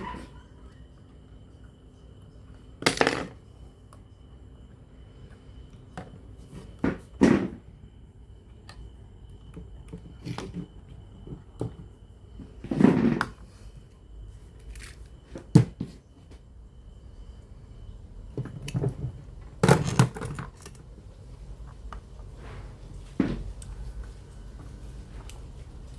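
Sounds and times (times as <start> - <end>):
faint steady high whine: 0.0 - 25.9
tools clicking and knocking: 19.6 - 20.9.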